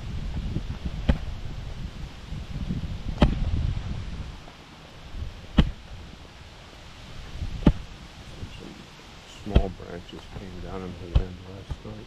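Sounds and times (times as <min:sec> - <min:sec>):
wind rumble on microphone: 0:00.0 - 0:12.0
hiking staff knocking on ground: 0:09.5 - 0:09.7, 0:11.1 - 0:11.8.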